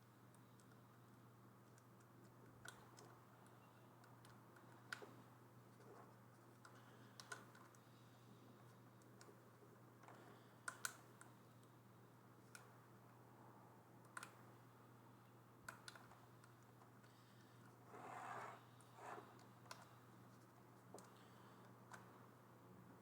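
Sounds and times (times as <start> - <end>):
faint sharp clicks and taps: 0.3 - 11.8, 15.6 - 17.8, 18.8 - 22.2.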